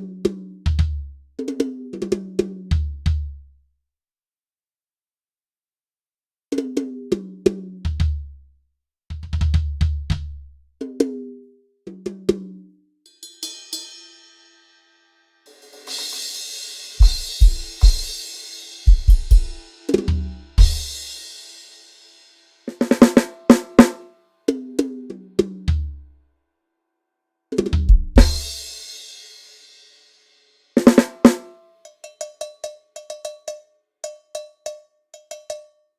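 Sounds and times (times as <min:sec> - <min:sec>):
cymbal crashes: 0:13.1 - 0:24.1, 0:28.2 - 0:30.0
tom drum fills: 0:15.5 - 0:21.4, 0:22.7 - 0:24.1, 0:27.7 - 0:29.0, 0:30.8 - 0:31.6
deep kick drum hits: 0:27.9 - 0:28.5.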